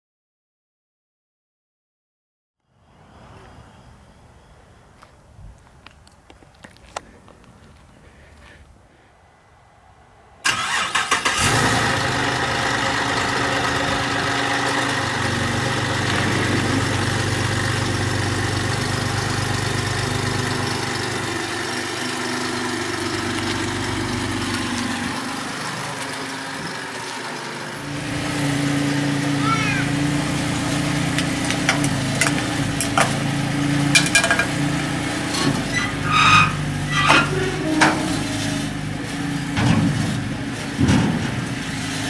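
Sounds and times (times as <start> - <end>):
car engine cranking: 10.4 - 42.0
car engine idling: 10.4 - 42.0.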